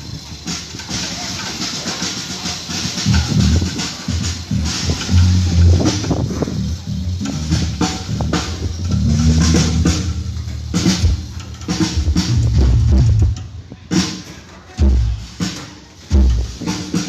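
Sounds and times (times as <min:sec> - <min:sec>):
drum kit and heavy bass music: 0:00.0 - 0:17.0
heavy low hit: 0:03.1 - 0:13.4.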